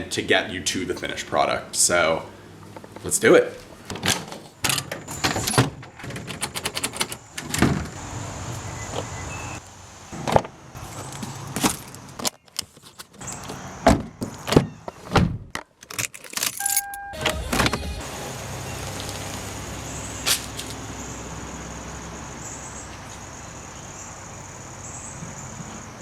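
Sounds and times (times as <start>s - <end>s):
keys jangling: 15.9s - 17.0s
short electronic beep: 16.6s - 17.4s.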